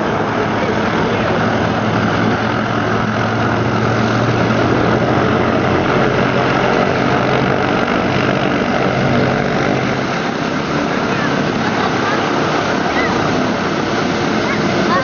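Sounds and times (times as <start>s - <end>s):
propeller aircraft engines droning: 0.0s - 15.0s.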